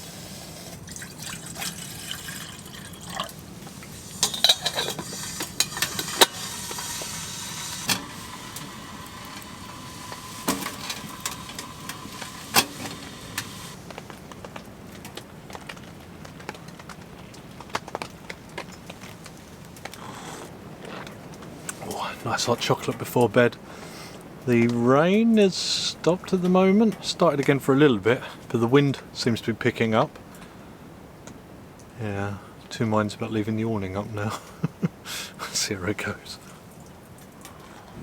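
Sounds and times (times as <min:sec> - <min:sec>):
hot water pouring into mug: 0:00.0 - 0:13.9
mug and utensils clinking: 0:00.5 - 0:13.8.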